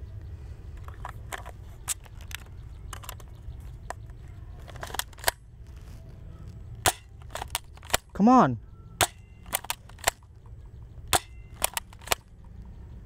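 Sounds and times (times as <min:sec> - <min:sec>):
toy shotgun clicks: 0:03.9 - 0:05.4, 0:06.8 - 0:08.2, 0:09.0 - 0:10.3, 0:11.0 - 0:12.6.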